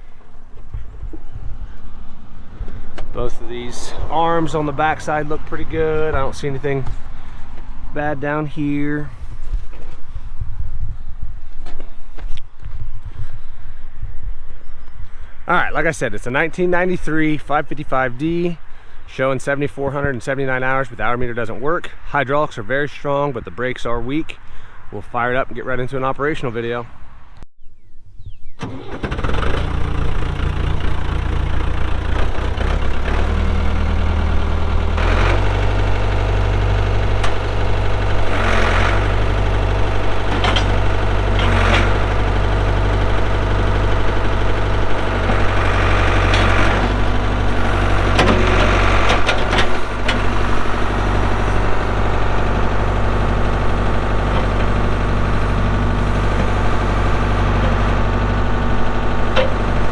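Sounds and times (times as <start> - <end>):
diesel engine running: 0.0 - 10.4, 28.6 - 59.9.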